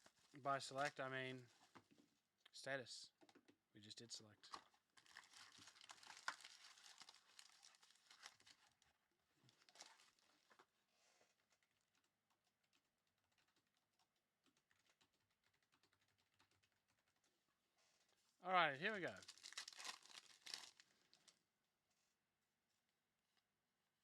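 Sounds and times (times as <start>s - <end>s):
packaging crinkling: 5.0s - 10.6s, 19.0s - 21.4s.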